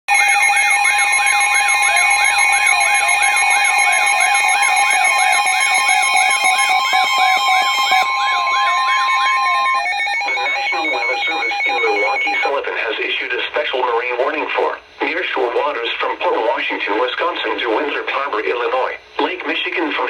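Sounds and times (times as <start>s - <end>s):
sweeping siren-like tone: 0.1s - 12.5s
pulsing beeps: 0.1s - 12.6s
steady warning alarm tone: 0.1s - 12.7s.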